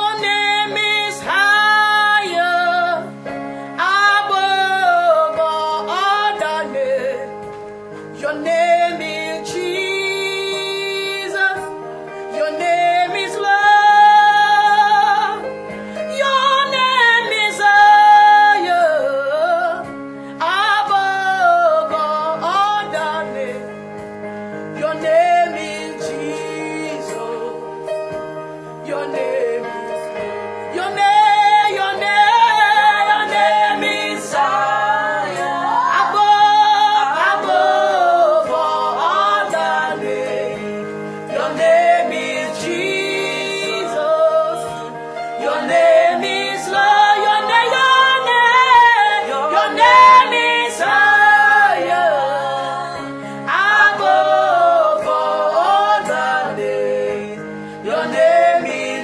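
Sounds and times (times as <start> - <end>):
sustained keyboard chords: 0.0 - 59.0
choir-like vocals: 8.2 - 15.5, 16.2 - 19.8, 24.8 - 28.2, 28.8 - 59.0.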